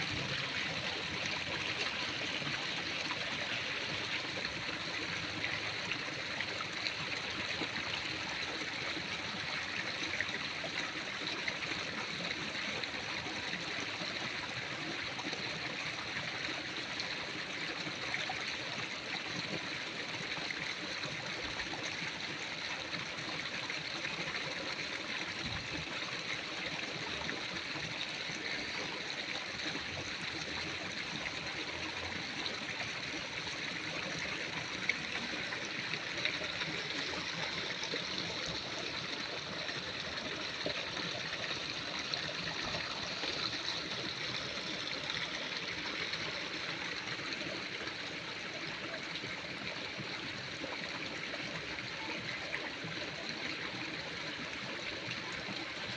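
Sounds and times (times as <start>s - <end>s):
running water rushing: 16.1s - 55.9s.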